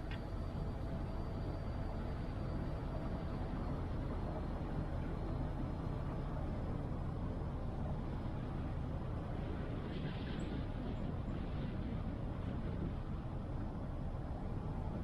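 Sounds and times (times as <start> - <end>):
car engine and tyre rumble: 0.0 - 15.0.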